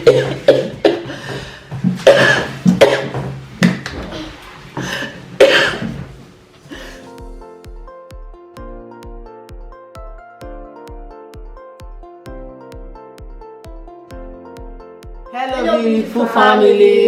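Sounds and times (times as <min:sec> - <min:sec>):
person coughing hoarsely: 0:00.0 - 0:03.3, 0:05.4 - 0:06.1
background music: 0:00.0 - 0:03.6, 0:06.7 - 0:17.0.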